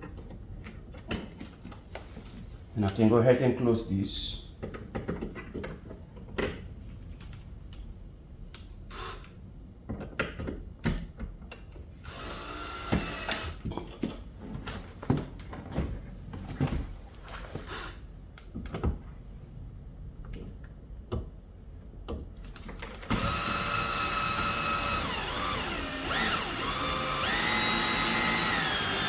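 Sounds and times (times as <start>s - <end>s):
small power screwdriver running: 12.1s - 13.6s, 23.0s - 29.0s.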